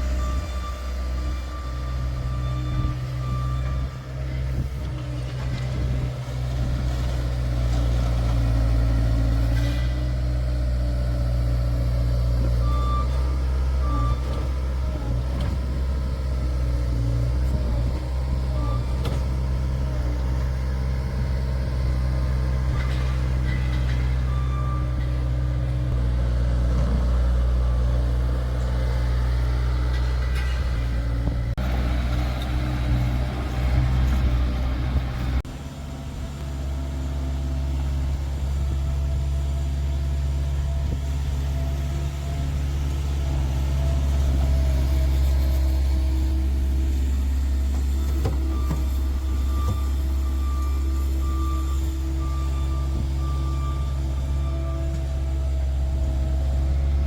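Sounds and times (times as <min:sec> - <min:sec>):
diesel engine running: 0:00.0 - 0:57.0
backup alarm beeps: 0:00.1 - 0:04.1, 0:48.1 - 0:54.9.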